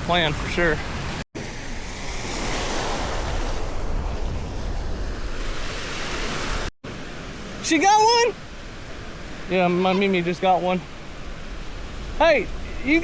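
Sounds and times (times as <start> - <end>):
surf washing onto beach: 0.0 - 13.0
wind buffeting microphone: 8.5 - 13.0.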